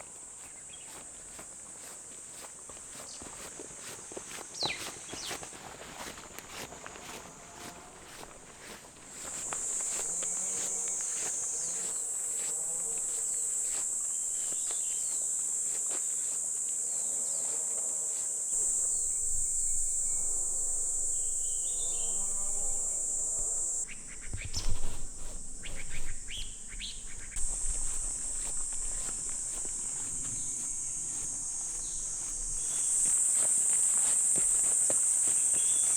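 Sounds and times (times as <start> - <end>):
high-pitched insect chorus: 3.8 - 35.9
knocks and rustles: 18.6 - 33.6.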